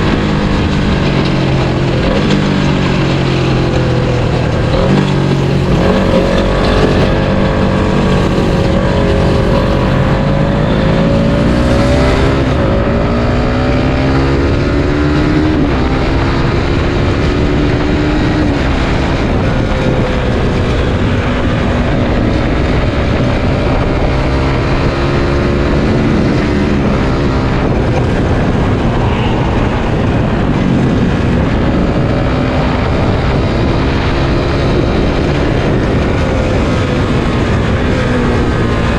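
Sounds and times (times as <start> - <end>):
motorcycle engine running: 0.0 - 14.6.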